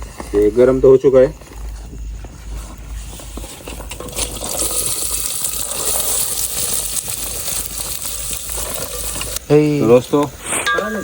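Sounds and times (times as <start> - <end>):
onions sizzling in hot oil: 3.0 - 11.0.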